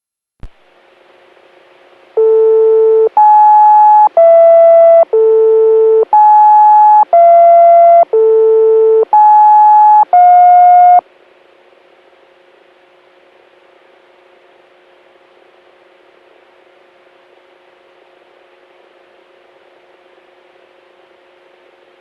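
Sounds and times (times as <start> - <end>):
electronic radio chime tones: 2.2 - 11.0
faint radio hiss and hum: 11.0 - 22.0.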